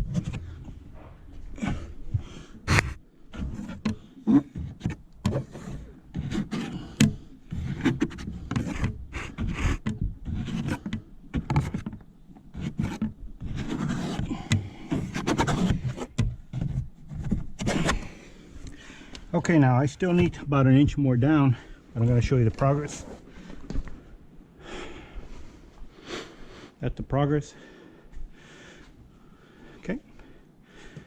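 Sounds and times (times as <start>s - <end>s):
sharp clicks and knocks: 2.6s - 18.0s
squeegee scraping wet film on glass: 2.7s - 11.8s.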